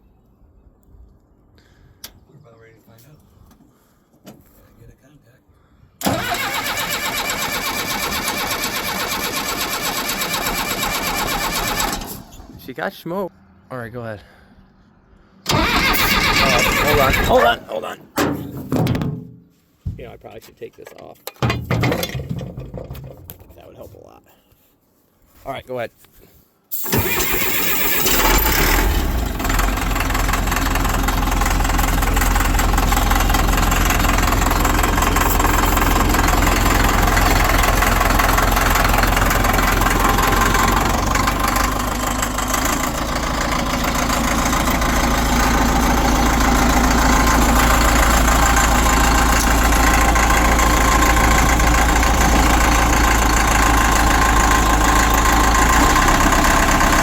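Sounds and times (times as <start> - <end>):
diesel engine clattering knock: 21.4 - 23.4.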